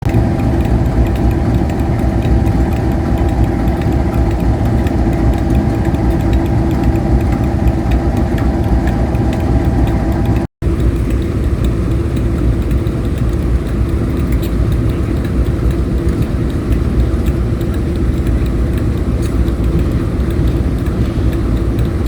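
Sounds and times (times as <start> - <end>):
diesel locomotive engine idling: 0.0 - 10.5.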